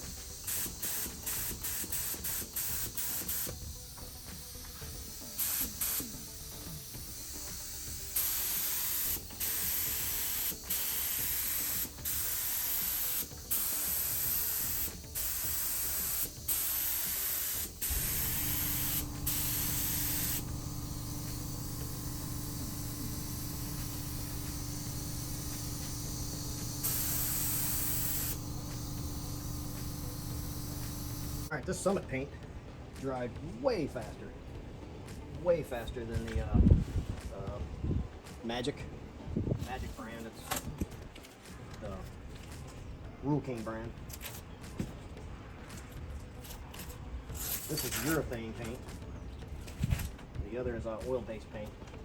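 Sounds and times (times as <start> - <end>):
paint spraying hiss: 0.0 - 31.5
steady low hum: 15.1 - 31.8.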